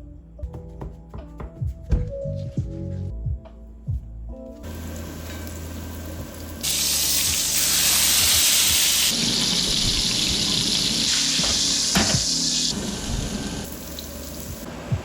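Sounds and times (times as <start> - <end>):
food sizzling in a hot pan: 4.7 - 14.8.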